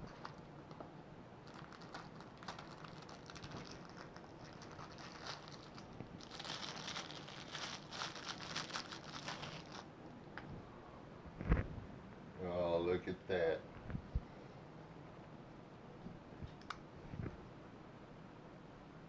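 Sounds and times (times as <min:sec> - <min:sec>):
packaging crinkling and rustling: 0:00.0 - 0:09.9.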